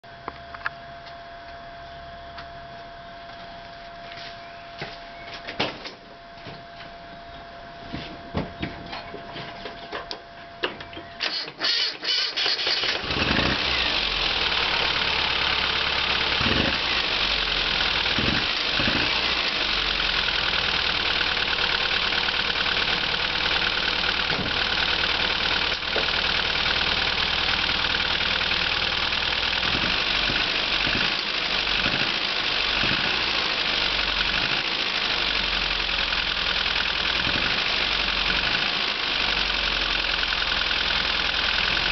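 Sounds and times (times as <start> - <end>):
car engine idling: 10.2 - 41.9
engine cranking on starter: 11.2 - 41.9.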